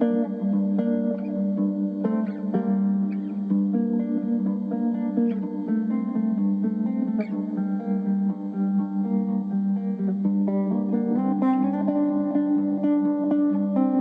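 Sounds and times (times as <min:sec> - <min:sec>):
plucked guitar music: 0:00.0 - 0:14.0.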